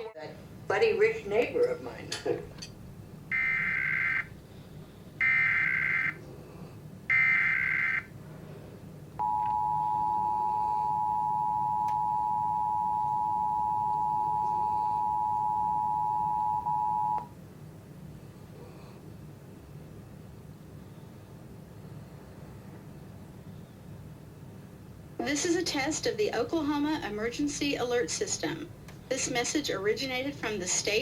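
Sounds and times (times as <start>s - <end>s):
two-tone attention signal: 9.2s - 17.3s.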